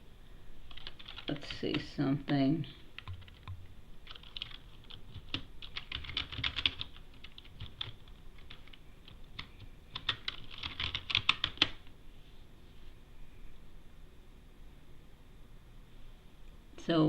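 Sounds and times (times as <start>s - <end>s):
typing on computer keyboard: 0.7s - 2.4s, 3.0s - 11.8s.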